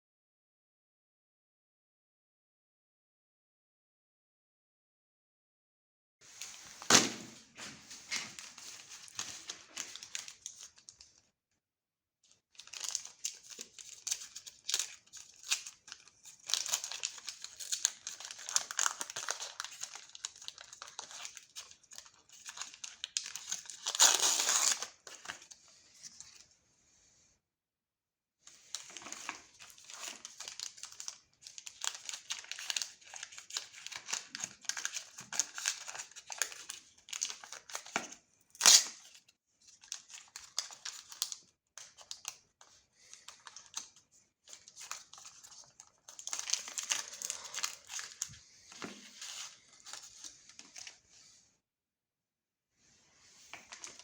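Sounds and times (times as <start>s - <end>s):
wrapper sharp crack: 6.8s - 7.4s, 38.6s - 39.0s
candy wrappers crinkling: 8.4s - 11.1s, 12.5s - 25.5s, 28.6s - 51.0s.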